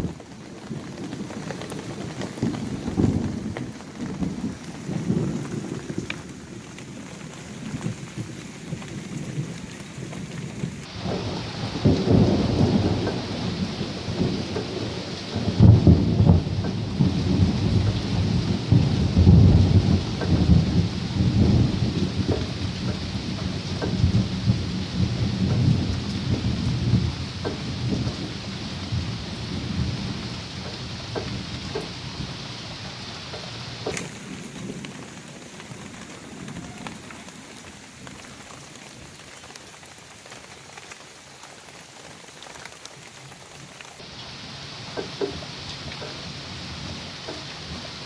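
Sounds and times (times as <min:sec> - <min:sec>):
low rumble of thunder: 0:00.0 - 0:44.0
steady rain falling: 0:00.0 - 0:48.0
water drops ticking: 0:33.3 - 0:44.1.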